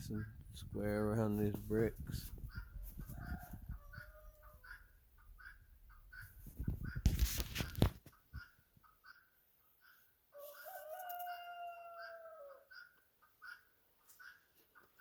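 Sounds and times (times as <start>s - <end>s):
rooster crowing: 3.0s - 4.7s, 10.3s - 12.7s.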